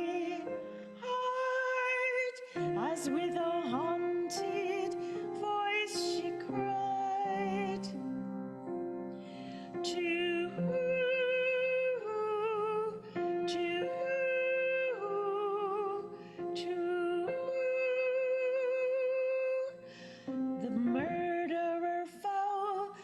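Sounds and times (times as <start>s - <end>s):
woman singing with vibrato: 0.0s - 8.0s, 9.8s - 19.8s, 20.6s - 23.0s
soft musical accompaniment: 0.0s - 23.0s
woman breathing: 9.1s - 9.8s, 19.8s - 20.6s.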